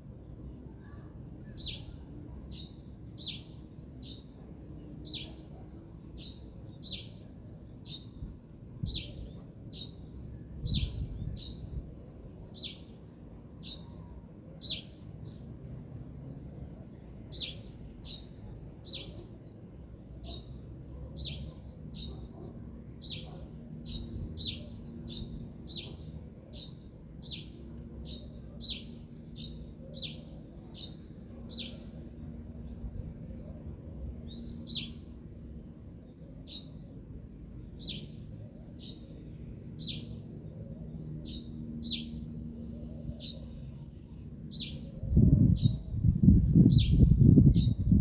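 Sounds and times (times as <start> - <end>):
songbird chirping: 0.2 - 48.0
steady low rumble: 44.0 - 48.0.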